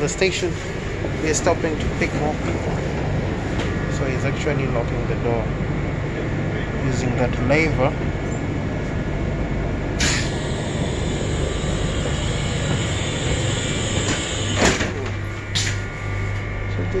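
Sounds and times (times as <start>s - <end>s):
train doors clunking: 10.0s - 15.9s.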